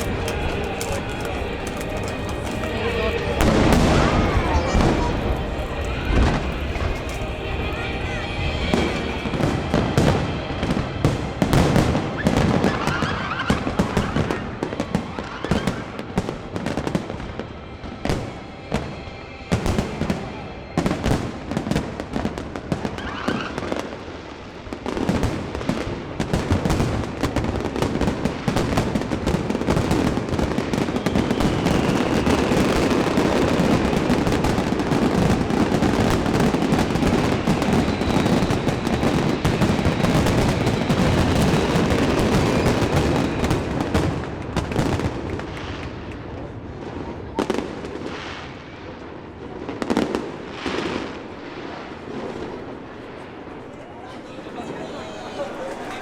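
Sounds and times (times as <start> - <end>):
firework shells bursting: 0.0 - 10.5
fireworks crackling and popping: 0.0 - 53.8.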